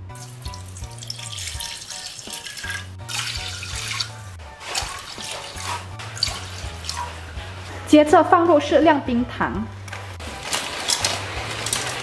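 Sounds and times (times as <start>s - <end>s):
water pouring into a pot: 0.1s - 7.3s, 10.2s - 12.0s.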